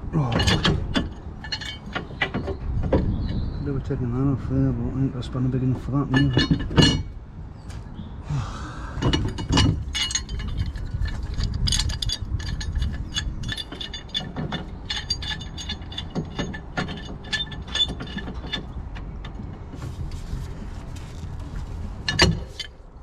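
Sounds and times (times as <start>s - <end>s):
low knocking and handling noise: 0.0s - 4.0s, 5.8s - 7.9s, 9.0s - 23.0s
metallic clicks and clinks: 0.2s - 2.6s, 9.0s - 19.4s, 22.0s - 23.0s.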